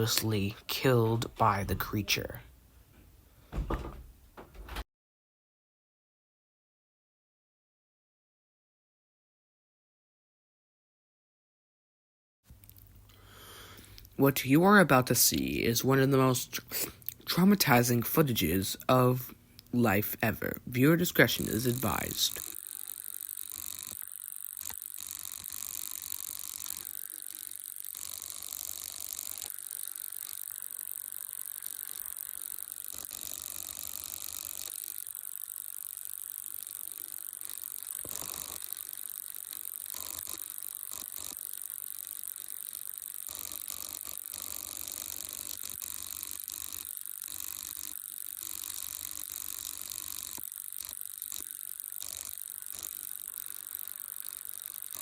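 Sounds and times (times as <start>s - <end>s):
rapid mechanical clicking: 20.4s - 55.0s.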